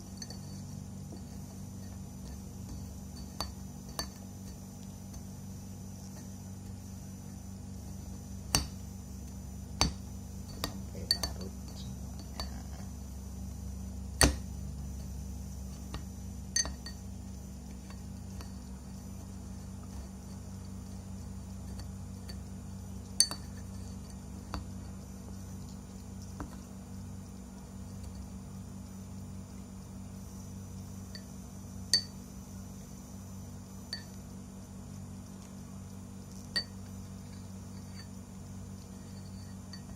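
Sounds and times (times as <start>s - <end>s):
steady low hum: 0.0s - 39.9s
glassware and utensils clinking: 10.6s - 12.8s.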